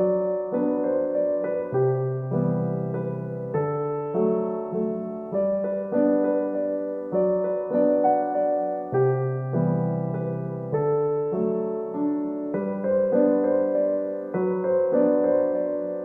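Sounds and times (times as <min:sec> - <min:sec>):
gentle electric piano chords: 0:00.0 - 0:16.0.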